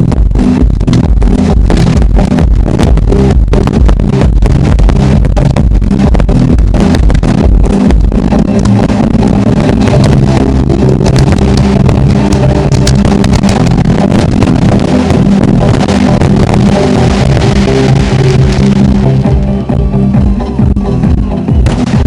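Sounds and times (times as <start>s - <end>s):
fireworks bursting and crackling: 0.0s - 19.3s, 21.6s - 22.0s
music with held chords: 0.0s - 22.0s.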